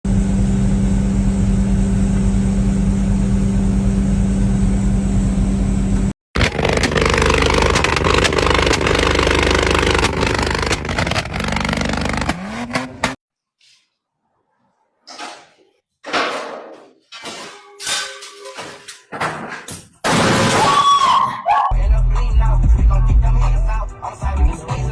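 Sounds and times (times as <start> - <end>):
motor engine droning: 0.1 - 13.2
clattering machine: 6.4 - 13.2.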